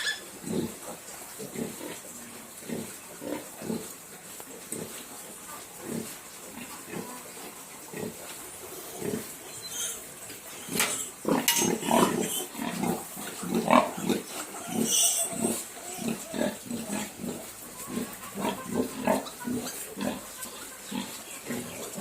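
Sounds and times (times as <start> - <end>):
piglets grunting: 7.9 - 22.0.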